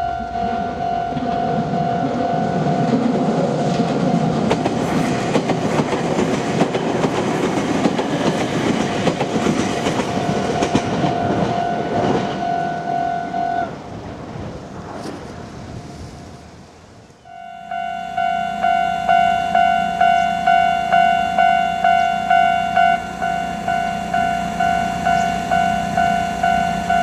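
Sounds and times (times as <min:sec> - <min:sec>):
crossing warning bell: 0:00.0 - 0:14.0, 0:17.2 - 0:27.0
electric train running: 0:00.0 - 0:15.5, 0:17.3 - 0:27.0
wheels clicking over rail joints: 0:00.0 - 0:16.1.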